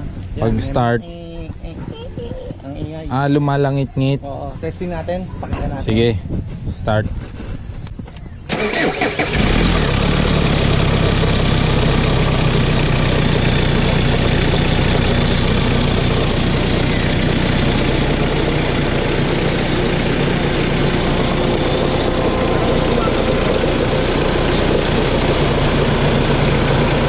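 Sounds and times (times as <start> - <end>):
engine idling: 8.4 - 27.0
engine cranking and starting: 8.5 - 27.0.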